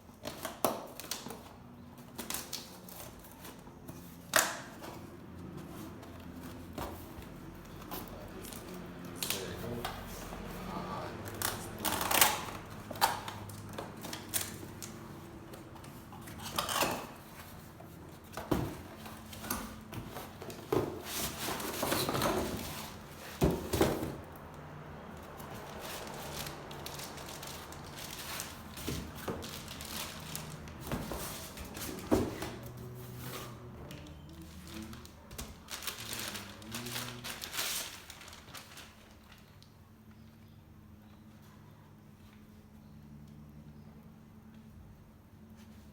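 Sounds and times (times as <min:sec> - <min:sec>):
packaging rustling: 0:25.2 - 0:39.6.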